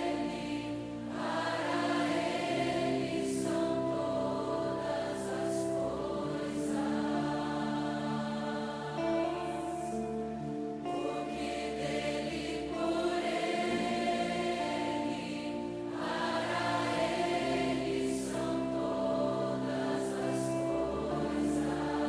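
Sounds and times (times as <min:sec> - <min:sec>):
slow choral singing: 0:00.0 - 0:22.0.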